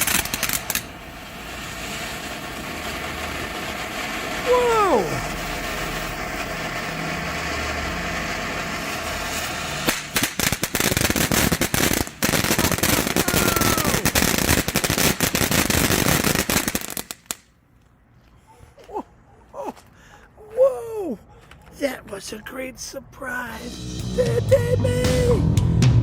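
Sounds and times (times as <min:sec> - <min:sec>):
firework crackling: 0:00.0 - 0:17.5
firework fountain hissing: 0:00.0 - 0:17.5.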